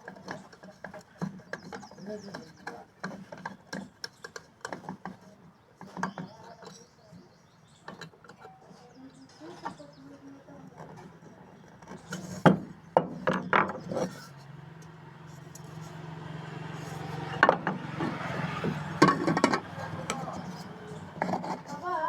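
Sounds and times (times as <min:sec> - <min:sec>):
tools knocking and clattering: 0:00.0 - 0:06.9, 0:07.8 - 0:08.7, 0:10.8 - 0:14.4, 0:16.7 - 0:21.8.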